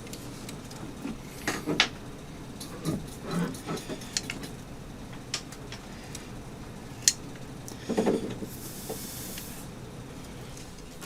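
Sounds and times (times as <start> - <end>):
short hiss: 8.5 - 9.7.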